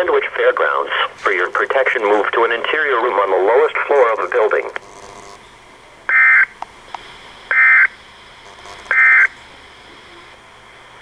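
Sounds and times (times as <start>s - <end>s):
warbling two-tone digital data bursts: 8.9s - 9.3s.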